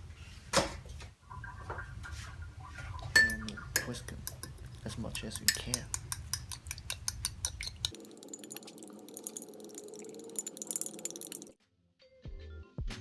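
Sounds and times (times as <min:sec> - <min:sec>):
whisk clinking against bowl: 0:03.1 - 0:08.6.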